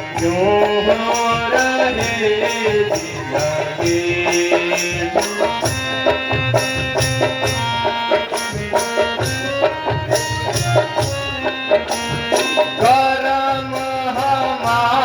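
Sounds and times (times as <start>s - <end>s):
hand drum beat: 0.0s - 15.0s.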